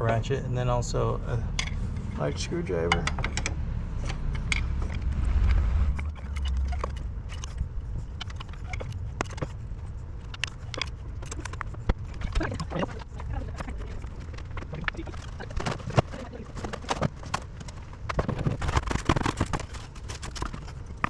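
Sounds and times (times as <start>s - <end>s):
low rumble: 0.0s - 21.0s
metallic clicks and taps of tools: 1.6s - 1.8s, 2.9s - 5.0s.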